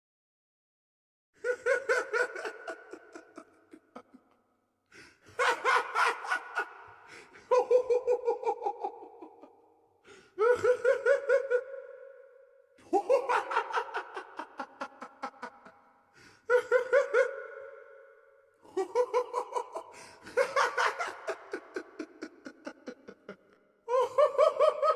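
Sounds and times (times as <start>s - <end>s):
high-pitched laughter: 1.4s - 4.4s, 5.2s - 9.5s, 10.4s - 11.9s, 12.8s - 15.8s, 16.5s - 17.8s, 18.6s - 24.9s.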